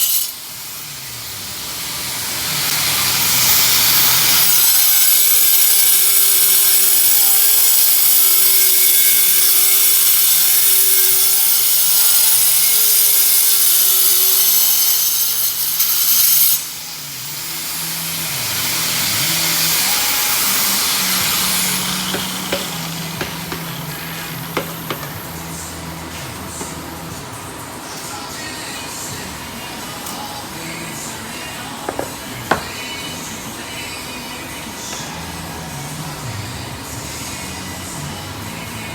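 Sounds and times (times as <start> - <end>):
power tool cutting countertop: 1.2 - 25.2.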